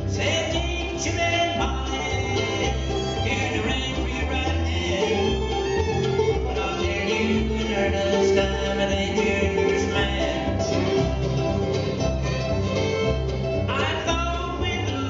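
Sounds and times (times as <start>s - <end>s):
bluegrass band playing: 0.0s - 15.0s.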